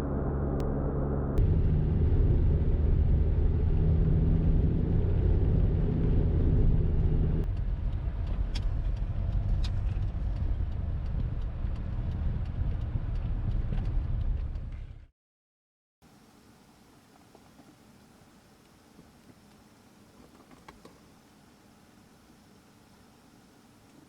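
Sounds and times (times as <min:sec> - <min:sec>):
car engine hum: 0:00.0 - 0:15.1
tyre and road rumble: 0:01.4 - 0:15.1.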